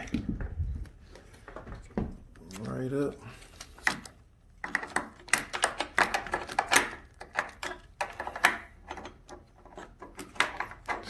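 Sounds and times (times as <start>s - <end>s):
plastic and metal parts clicking: 3.4s - 11.0s.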